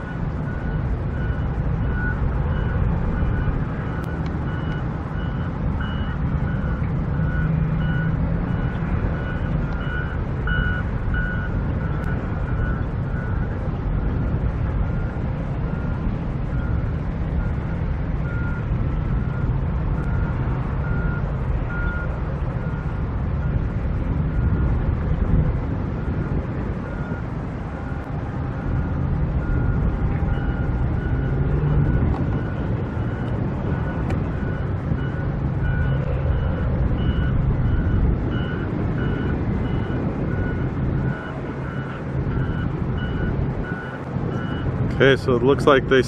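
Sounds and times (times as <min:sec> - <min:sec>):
backup alarm beeping: 0:00.0 - 0:14.2, 0:27.8 - 0:44.7.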